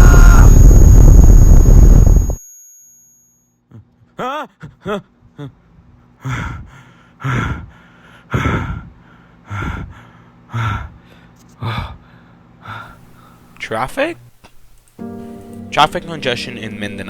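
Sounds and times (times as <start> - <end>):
heavy sighing breaths: 5.8 - 13.5
person gasping: 6.2 - 13.4.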